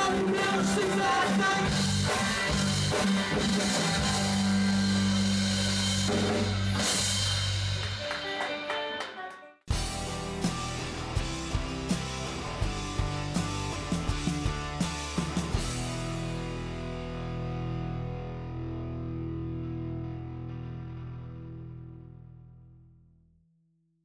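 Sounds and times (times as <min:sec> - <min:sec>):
steady drum beat: 0:00.0 - 0:08.6, 0:09.7 - 0:16.4
live rock band playing: 0:00.0 - 0:09.0, 0:09.7 - 0:21.1
guitars: 0:00.0 - 0:22.9.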